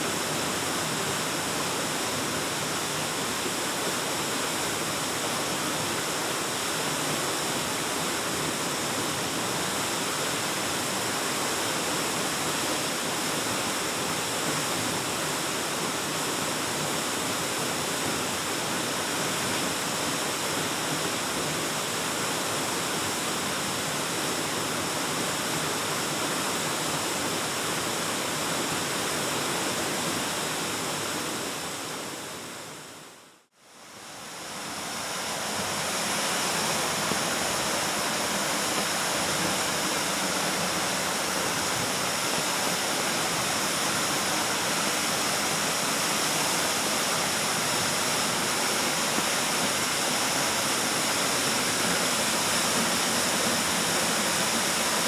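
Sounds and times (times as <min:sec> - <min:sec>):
waterfall rushing: 0:34.0 - 0:55.0.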